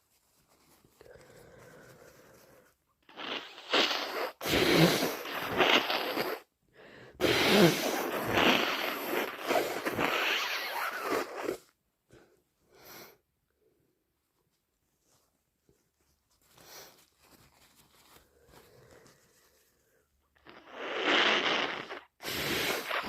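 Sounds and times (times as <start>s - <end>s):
person blowing congested nose: 1.0s - 11.7s, 12.7s - 13.2s, 16.6s - 17.1s, 20.4s - 23.0s.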